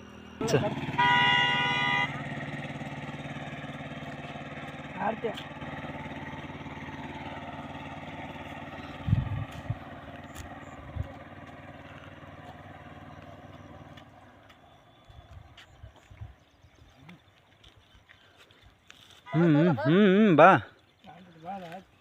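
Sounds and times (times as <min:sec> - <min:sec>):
small engine running: 0:00.0 - 0:15.8
dull low thumps: 0:08.9 - 0:09.9.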